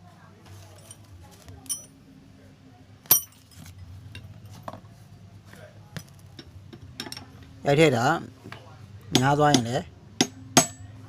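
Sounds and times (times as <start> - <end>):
metal tools clinking: 0.6 - 2.0, 3.1 - 4.8, 6.0 - 7.4.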